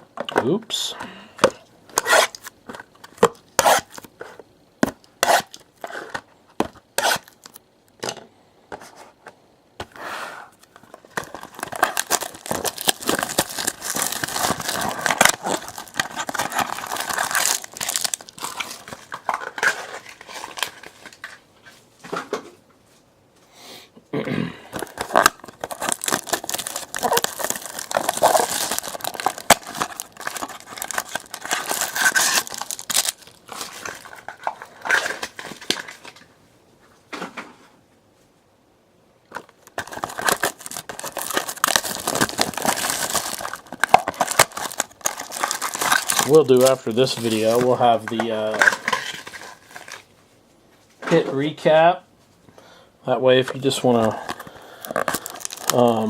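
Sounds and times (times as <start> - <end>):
wrappers crinkling and tearing: 10.7 - 21.4, 24.8 - 36.2, 39.3 - 50.1, 53.5 - 56.0.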